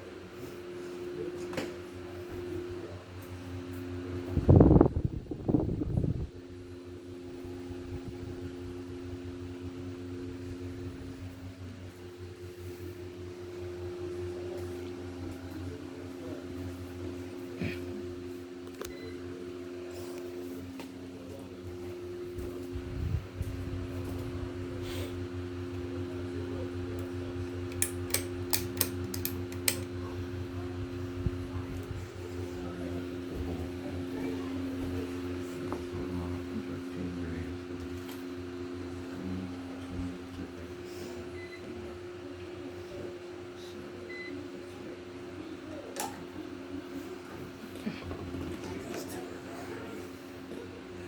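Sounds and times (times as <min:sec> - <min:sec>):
ceiling fans humming: 0:00.0 - 0:51.0
loud bursts of low noise: 0:04.2 - 0:08.4
sharp clicks: 0:27.7 - 0:29.9.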